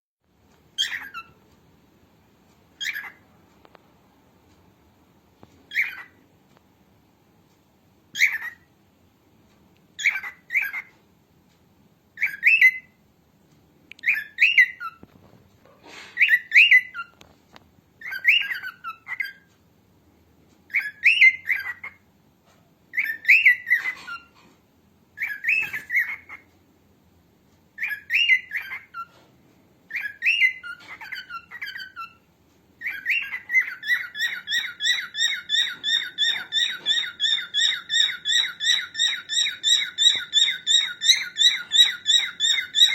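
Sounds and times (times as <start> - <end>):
cockatiel chirping: 0.7 - 1.4, 2.8 - 3.3, 5.6 - 6.2, 8.1 - 8.7, 10.0 - 11.0, 12.2 - 13.0, 13.9 - 15.2, 16.1 - 17.3, 18.0 - 19.5, 20.7 - 22.1, 22.9 - 24.5, 25.2 - 26.5, 27.8 - 29.3, 29.9 - 42.9.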